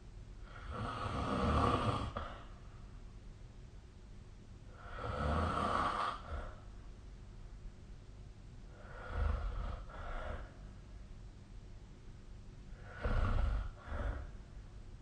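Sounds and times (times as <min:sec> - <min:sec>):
person snoring: 0:00.4 - 0:02.5, 0:04.7 - 0:06.6, 0:08.7 - 0:10.5, 0:12.7 - 0:14.4.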